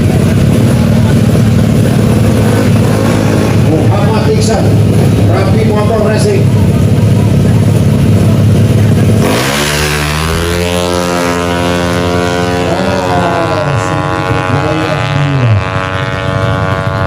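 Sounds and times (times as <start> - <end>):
scooter engine at full throttle: 0.0 - 17.0.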